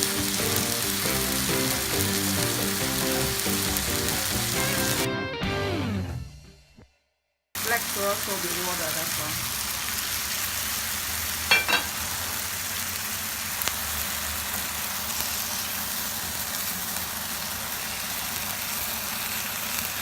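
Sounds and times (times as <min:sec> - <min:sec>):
fish sizzling in hot oil: 0:00.0 - 0:05.1, 0:07.6 - 0:20.0
sharp clinks: 0:11.5 - 0:12.0.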